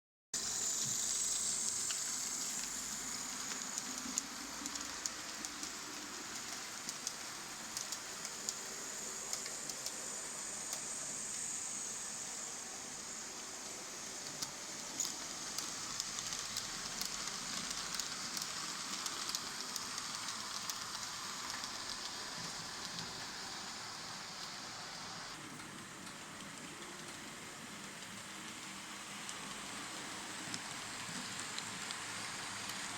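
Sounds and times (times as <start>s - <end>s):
model train motor whirring: 0.4s - 26.2s.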